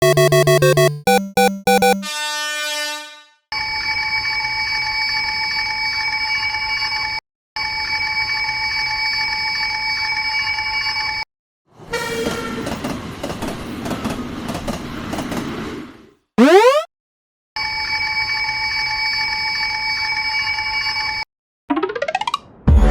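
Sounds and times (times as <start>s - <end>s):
train passing with wheel clatter: 12.2s - 16.0s.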